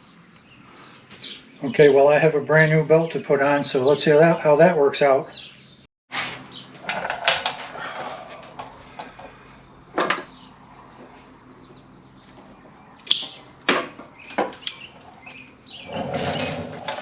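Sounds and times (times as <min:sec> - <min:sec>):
tools knocking and clattering: 0:06.8 - 0:07.8, 0:10.0 - 0:10.3.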